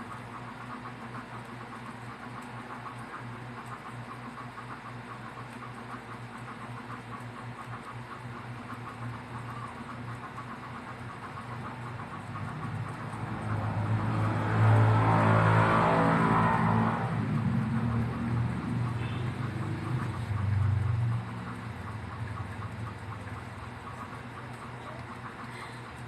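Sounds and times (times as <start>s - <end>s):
loud steady rumbling: 8.6s - 26.0s.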